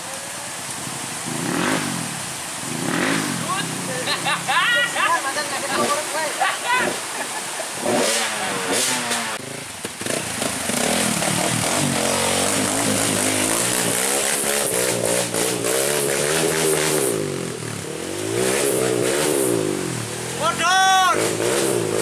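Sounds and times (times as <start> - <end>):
motorcycle engine revving: 0.8 - 4.4, 7.7 - 22.0.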